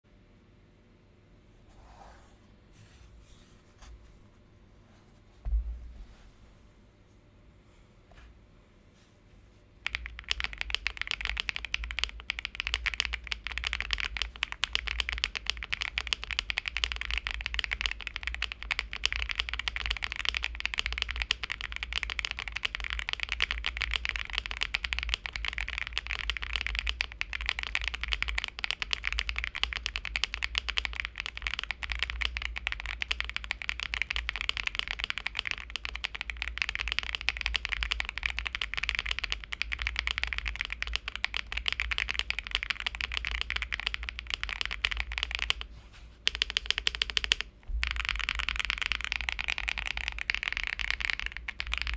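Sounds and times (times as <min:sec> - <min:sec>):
fast mechanical keyboard typing: 0:09.8 - 0:45.7, 0:46.3 - 0:51.9.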